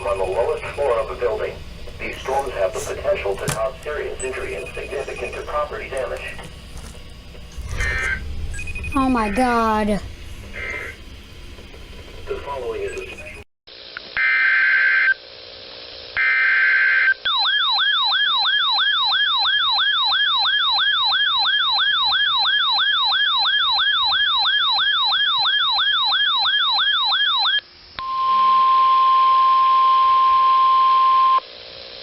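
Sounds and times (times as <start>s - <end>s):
short data burst: 0.0s - 6.4s, 7.5s - 11.3s
steady warning alarm tone: 0.0s - 13.4s, 16.2s - 28.3s
warbling siren tone: 16.4s - 27.6s.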